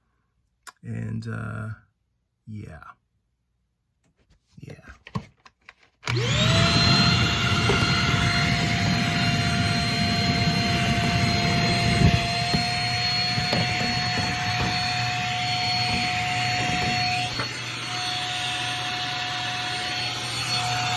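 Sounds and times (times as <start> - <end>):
vacuum nozzle knocking and scraping: 5.0 - 20.9
vacuum cleaner whine: 6.0 - 20.9.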